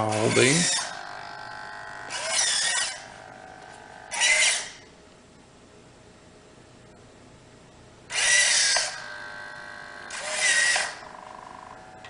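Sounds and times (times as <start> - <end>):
faint servo hum: 0.0 - 5.0, 8.1 - 12.0
servo motors whirring: 0.1 - 4.8, 8.1 - 11.2.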